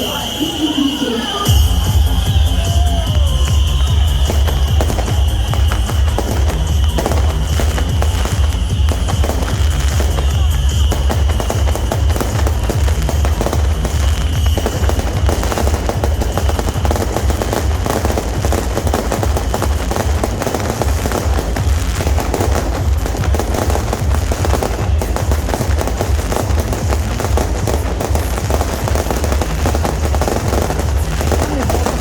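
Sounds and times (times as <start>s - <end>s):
rapid crackle of firework bangs: 1.5s - 32.0s.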